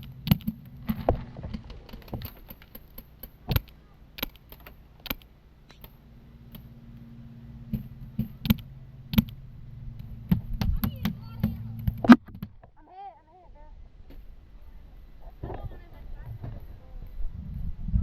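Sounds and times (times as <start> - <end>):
sharp clicks and knocks: 0.0 - 7.1, 7.7 - 9.4, 10.0 - 12.7
steady low hum: 0.0 - 18.0.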